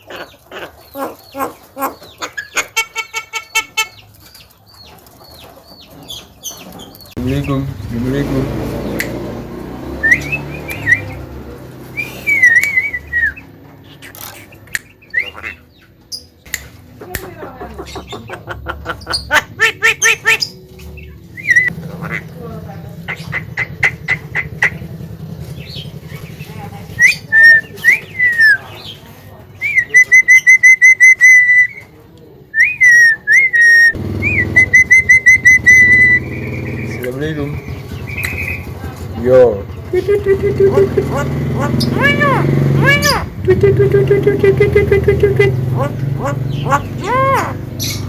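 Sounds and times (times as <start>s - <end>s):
sharp bird clicks: 8.9s - 9.3s, 14.1s - 15.3s, 16.4s - 17.3s, 38.0s - 38.7s
bird whistling: 9.9s - 11.3s, 11.9s - 13.5s, 14.7s - 15.6s, 21.4s - 21.8s, 27.0s - 29.0s, 29.6s - 31.8s, 32.6s - 38.7s.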